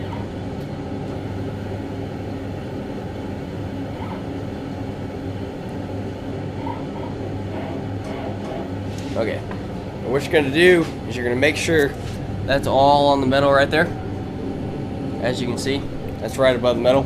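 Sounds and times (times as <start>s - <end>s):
machine hum with low drone: 0.0s - 17.0s.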